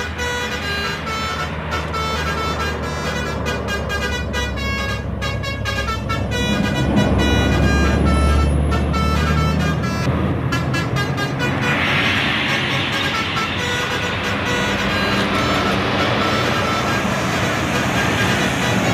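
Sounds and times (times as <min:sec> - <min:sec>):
bus engine running: 0:00.0 - 0:18.9
musical air horn tune: 0:00.0 - 0:18.9
air hissing: 0:11.0 - 0:18.9.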